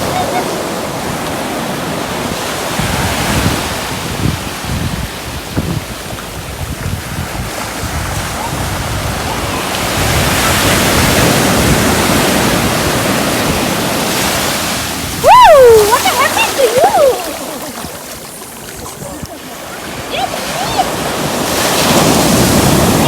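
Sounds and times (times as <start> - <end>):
sea waves washing on shore: 0.0 - 23.0
wind buffeting microphone: 0.0 - 23.0
short loud falling call: 15.2 - 18.0.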